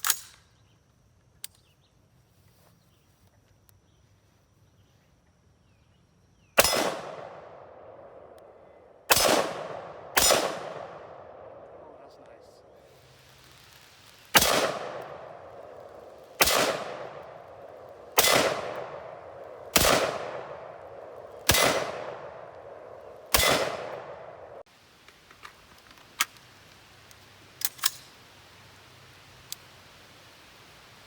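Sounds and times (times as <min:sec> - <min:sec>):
faint sharp clicks: 0:01.4 - 0:01.8, 0:29.4 - 0:29.7
rifle shots echoing: 0:06.6 - 0:12.7, 0:14.3 - 0:24.7.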